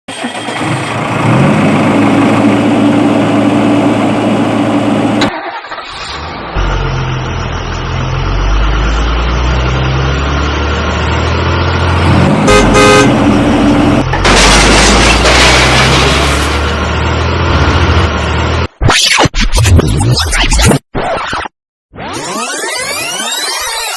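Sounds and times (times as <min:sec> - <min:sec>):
engine noise: 0:00.1 - 0:18.7
vehicle horn honking: 0:12.4 - 0:13.3.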